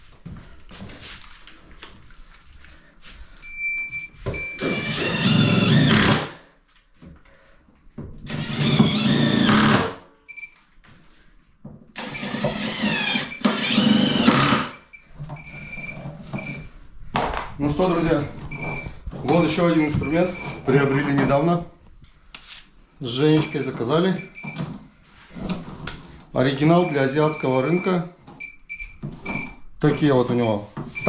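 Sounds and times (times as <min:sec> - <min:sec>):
impact driver driving screws: 0:04.6 - 0:06.4, 0:08.3 - 0:10.0, 0:12.0 - 0:14.8.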